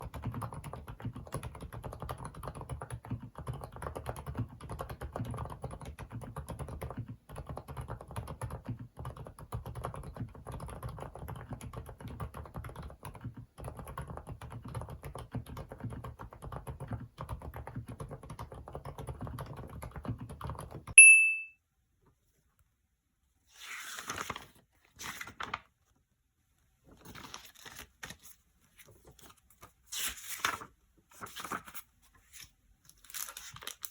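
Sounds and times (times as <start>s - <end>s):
soft keyboard typing: 0.0s - 21.4s
loud high ding: 21.0s - 21.6s.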